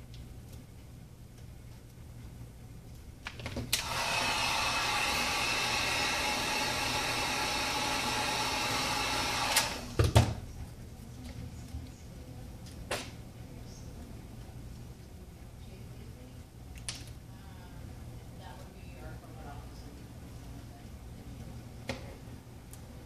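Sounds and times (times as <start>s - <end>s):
heat gun fan whine: 3.3s - 10.4s.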